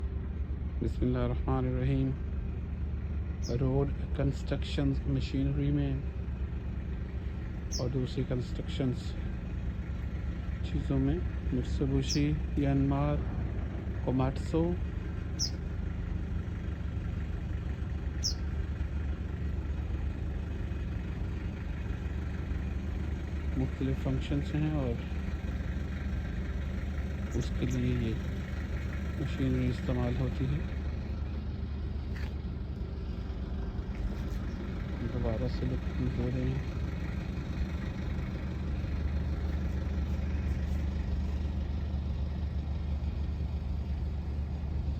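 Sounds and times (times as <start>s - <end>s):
construction machine engine running: 0.0s - 44.9s
falling bird chirp: 7.7s - 8.0s, 15.1s - 15.7s, 18.2s - 18.6s.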